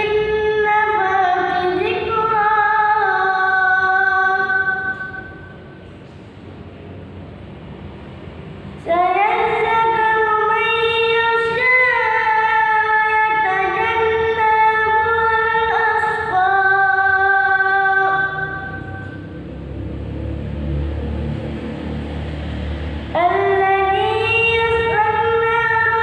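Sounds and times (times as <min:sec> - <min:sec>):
child chanting recitation: 0:00.0 - 0:05.6, 0:08.8 - 0:19.4, 0:22.9 - 0:26.0.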